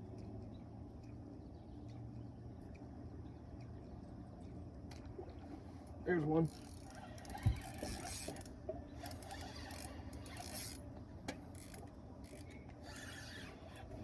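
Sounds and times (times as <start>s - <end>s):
fishing reel gears whirring: 6.4s - 10.8s, 11.5s - 14.0s.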